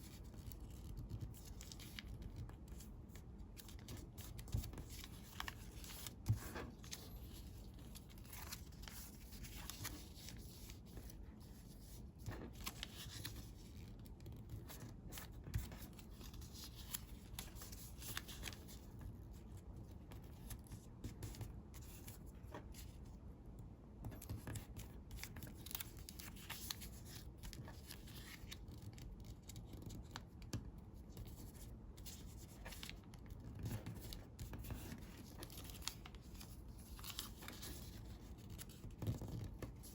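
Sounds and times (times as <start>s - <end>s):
paper rustling and creasing: 0.0s - 23.2s, 24.1s - 39.9s.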